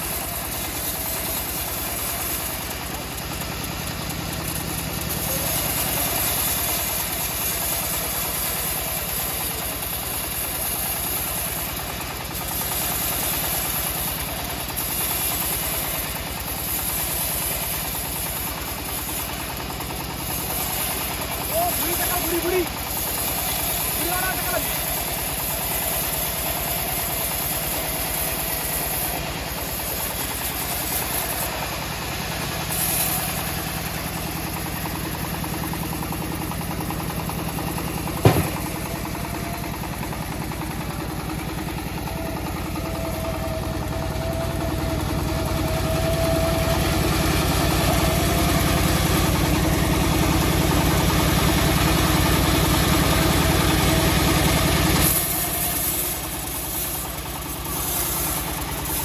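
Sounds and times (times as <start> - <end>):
bandsaw mill sawing a log: 0.0 - 59.0
sharp knock: 38.2 - 39.0.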